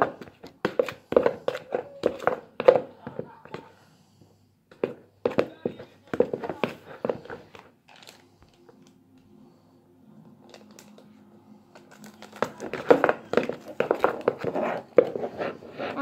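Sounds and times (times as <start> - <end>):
wet paper crinkling and crackling: 7.5 - 9.0, 10.4 - 15.2.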